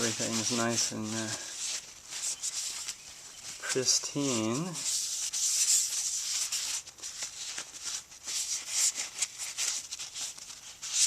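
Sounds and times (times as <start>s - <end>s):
rag rubbing on metal: 0.0s - 2.9s.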